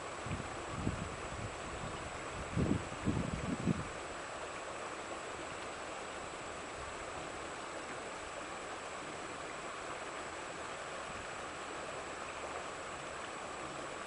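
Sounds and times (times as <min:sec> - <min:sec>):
running water rushing: 0:00.0 - 0:14.0.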